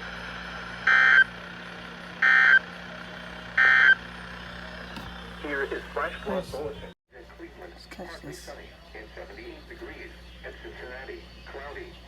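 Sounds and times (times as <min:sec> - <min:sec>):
two-tone warbling data squawks: 0:03.6 - 0:04.0.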